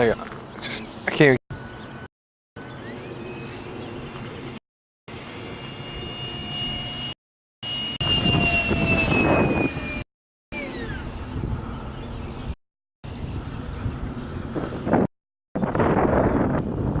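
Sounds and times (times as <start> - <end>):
model jet fan whining: 3.0 - 10.0, 10.6 - 12.0.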